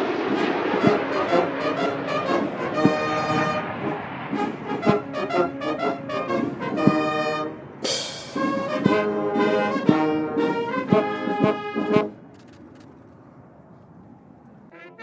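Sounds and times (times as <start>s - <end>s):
brass band playing chords: 0.0s - 12.3s, 14.7s - 15.0s
cymbal crash: 7.8s - 8.8s
drum beats: 7.8s - 9.2s.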